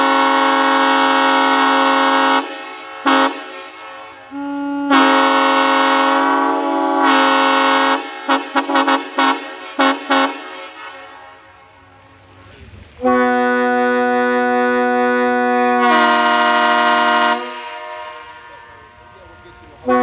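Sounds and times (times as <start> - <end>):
locomotive air horn chord: 0.0 - 11.9, 13.0 - 20.0.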